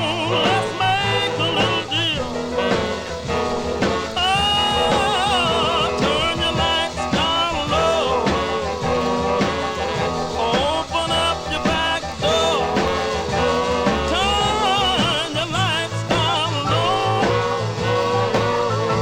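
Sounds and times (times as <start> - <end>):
instrumental backing with bass: 0.0 - 19.0
person singing: 0.0 - 19.0.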